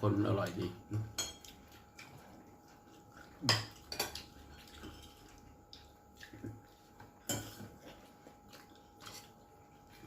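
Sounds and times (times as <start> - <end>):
cutlery and dishes clinking: 0.9 - 2.1, 3.4 - 5.3, 7.2 - 7.9.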